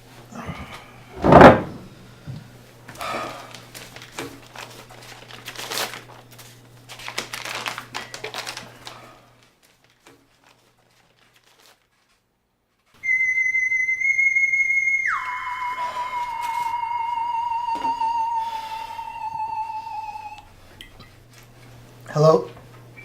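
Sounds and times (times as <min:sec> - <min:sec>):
rustling and crinkling: 0:00.0 - 0:13.0
low hum: 0:13.0 - 0:21.3
steady high-pitched tone: 0:13.1 - 0:20.5.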